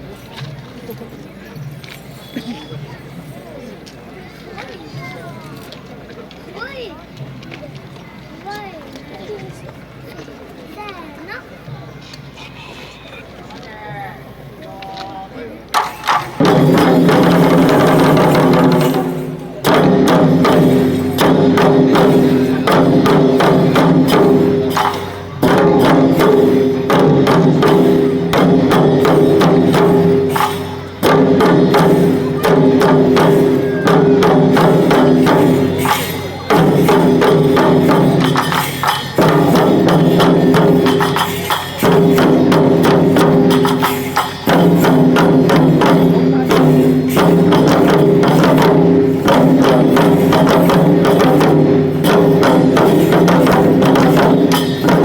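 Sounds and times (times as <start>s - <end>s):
clacking percussion: 0.0s - 55.0s
fast drum strokes: 15.7s - 55.0s.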